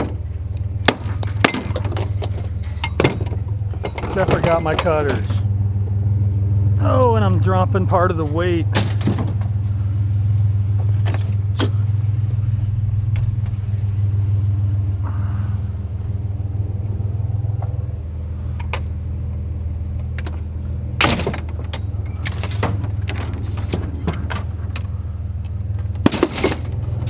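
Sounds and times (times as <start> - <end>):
truck engine idling: 0.0 - 27.0
scrap metal clanking: 0.8 - 5.5, 21.0 - 27.0.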